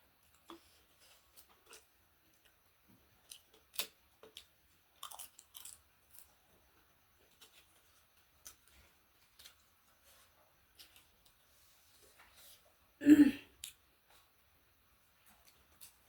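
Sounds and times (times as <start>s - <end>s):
person chewing and eating: 0.2s - 12.2s.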